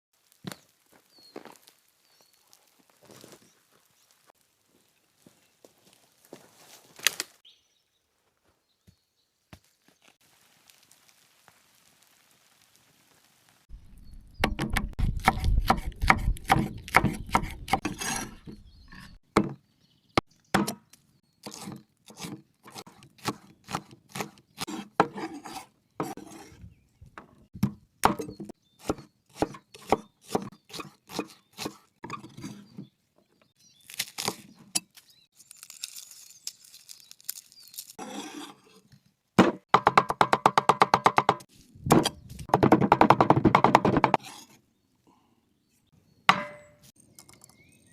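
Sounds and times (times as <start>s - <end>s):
cleaver chopping meat on wood: 14.4s - 18.0s, 20.6s - 20.8s, 22.2s - 25.2s, 27.6s - 31.8s, 39.4s - 44.2s.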